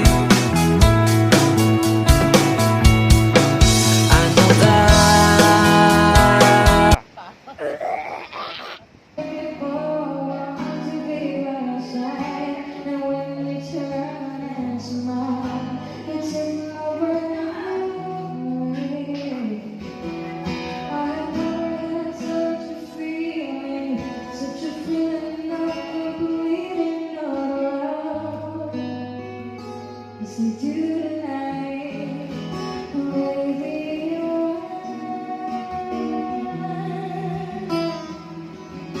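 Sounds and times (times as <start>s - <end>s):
acoustic guitar: 0.0s - 7.4s, 8.8s - 39.0s
woman singing: 4.0s - 7.0s, 9.2s - 29.0s, 30.2s - 38.5s.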